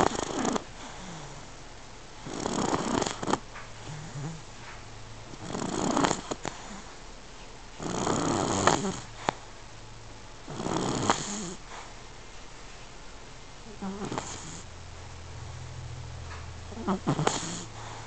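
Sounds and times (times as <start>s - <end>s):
puppy snoring: 0.0s - 7.0s, 7.7s - 9.5s, 10.4s - 12.0s, 13.6s - 14.7s, 15.3s - 18.0s.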